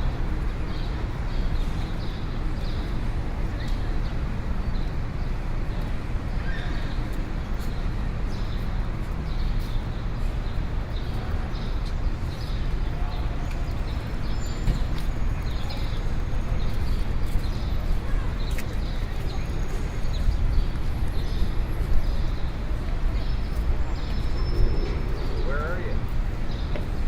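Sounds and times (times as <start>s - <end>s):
traffic rumble: 0.0s - 27.0s
crowd murmur: 14.8s - 27.0s.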